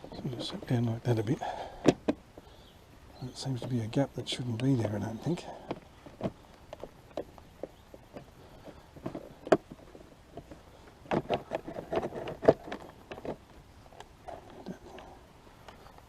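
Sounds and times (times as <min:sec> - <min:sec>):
body panel clicks and knocks: 0:01.8 - 0:02.2, 0:03.5 - 0:14.6.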